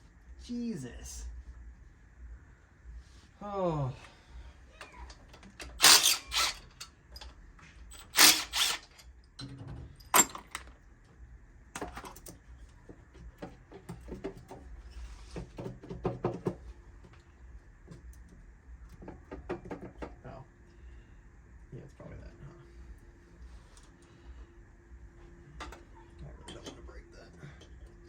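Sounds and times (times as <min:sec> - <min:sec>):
tools clicking and clattering: 0:04.8 - 0:10.7
harsh bursts of tool noise: 0:05.6 - 0:06.9, 0:07.9 - 0:09.0
sharp metallic clank: 0:05.7 - 0:06.9, 0:07.9 - 0:09.0.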